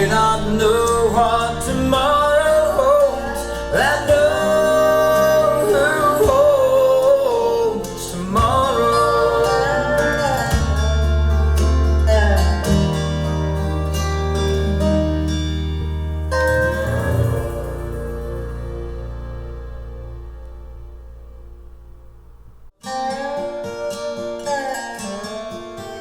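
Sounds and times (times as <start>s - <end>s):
person singing wavering notes: 0.0s - 15.3s, 16.0s - 21.1s
country gospel song on speakers: 0.0s - 21.4s
bass: 0.0s - 26.0s
plucked acoustic guitar: 0.0s - 26.0s.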